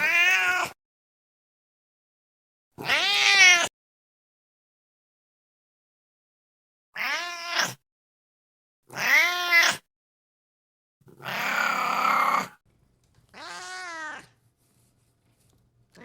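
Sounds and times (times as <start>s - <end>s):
cat meowing: 0.0s - 0.8s, 2.8s - 3.7s, 7.0s - 7.8s, 8.9s - 9.8s, 11.2s - 12.6s, 13.3s - 14.4s.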